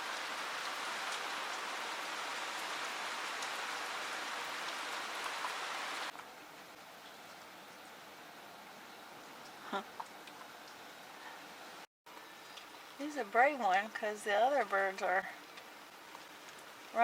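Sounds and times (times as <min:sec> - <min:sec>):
heavy rain falling: 0:00.0 - 0:08.0.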